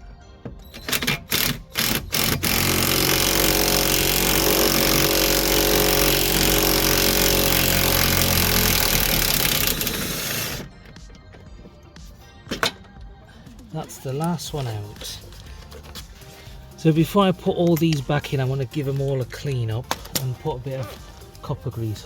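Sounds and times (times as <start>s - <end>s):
power tool running: 0.7s - 10.8s.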